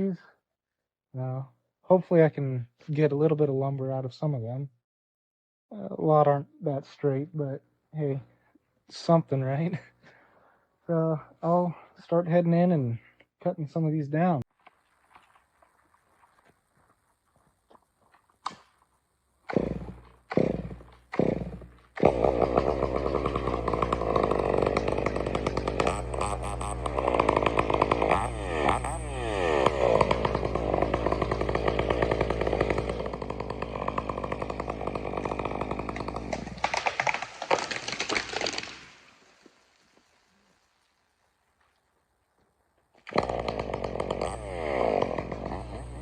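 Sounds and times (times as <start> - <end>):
chainsaw engine running: 19.4 - 38.6, 43.1 - 46.0.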